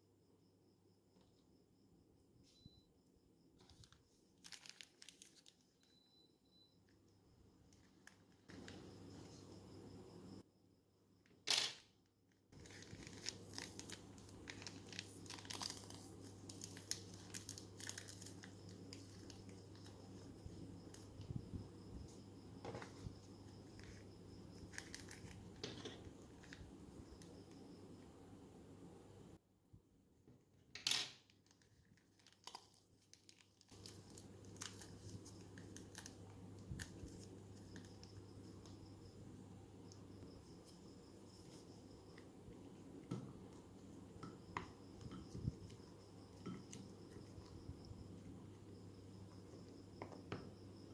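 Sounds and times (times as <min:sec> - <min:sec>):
plastic bag crinkling: 0:03.7 - 0:05.9, 0:12.6 - 0:19.9, 0:31.4 - 0:38.0.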